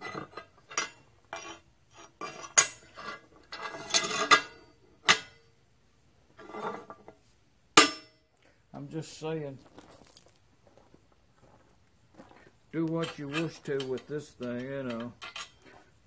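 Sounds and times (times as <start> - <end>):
steel clamp clinking on metal table: 13.0 - 15.6.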